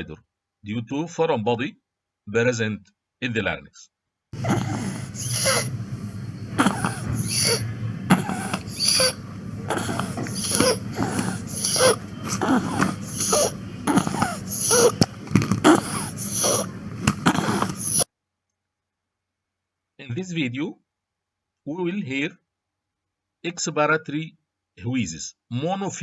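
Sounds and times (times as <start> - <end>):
child's harsh noisy breathing: 4.4 - 18.1.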